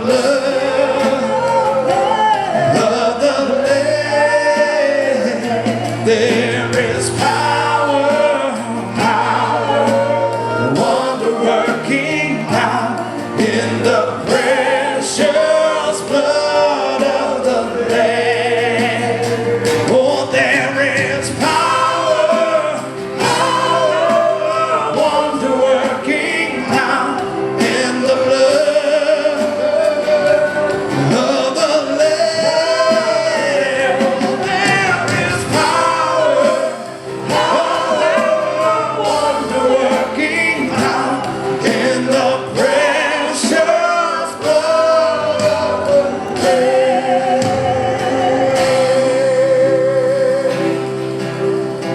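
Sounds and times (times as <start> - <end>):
choir singing a hymn with band: 0.0 - 51.9.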